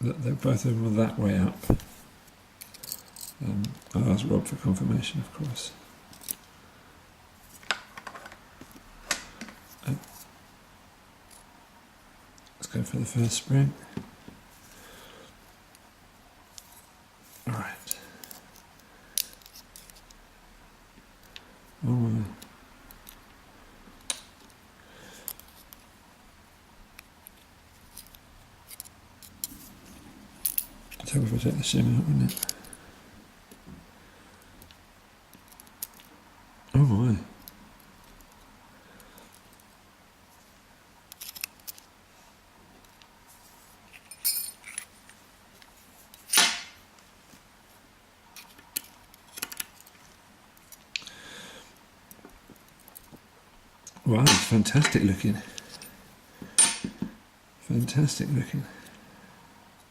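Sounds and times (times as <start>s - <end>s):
person breathing: 14.6s - 15.4s, 24.8s - 25.5s, 51.0s - 51.8s
small metallic clicks: 41.1s - 41.9s.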